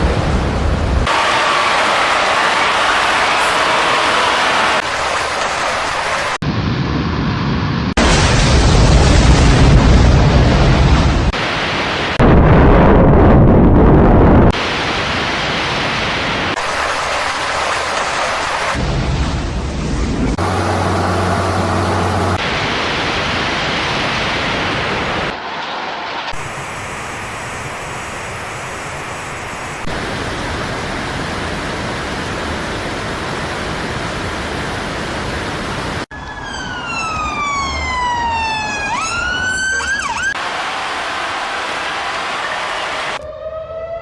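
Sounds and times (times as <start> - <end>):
heavy rain and floodwater rushing: 0.0 - 6.4, 7.9 - 13.1, 14.3 - 36.1, 40.2 - 43.2
emergency vehicle siren wailing: 20.4 - 22.5, 36.1 - 44.0.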